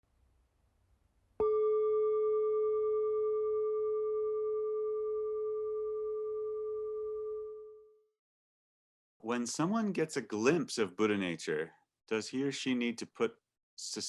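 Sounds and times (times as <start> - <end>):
singing bowl ringing: 1.4 - 8.1.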